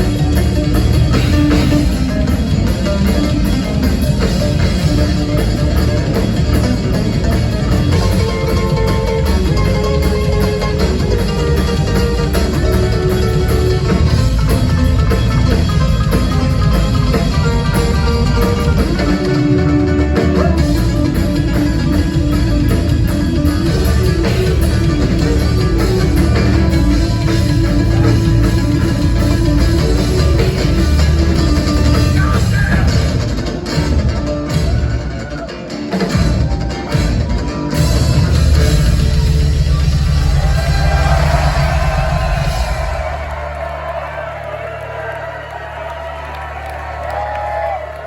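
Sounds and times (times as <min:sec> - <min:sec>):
band playing instrumental: 0:00.0 - 0:48.0.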